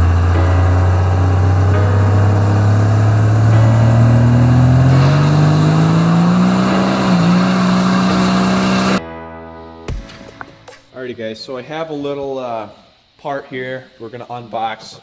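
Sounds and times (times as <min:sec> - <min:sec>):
diesel truck engine revving: 0:00.0 - 0:09.0.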